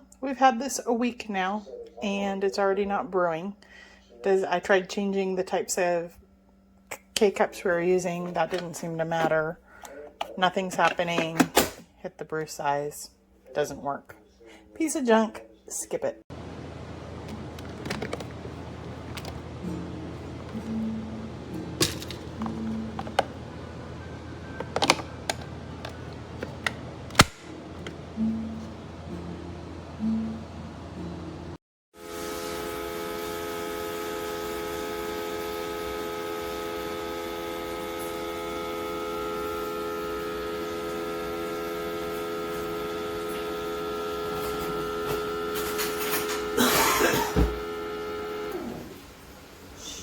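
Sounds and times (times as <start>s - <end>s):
coffee maker humming: 7.2s - 11.8s, 16.3s - 50.0s
brief low machine hums: 16.3s - 31.6s.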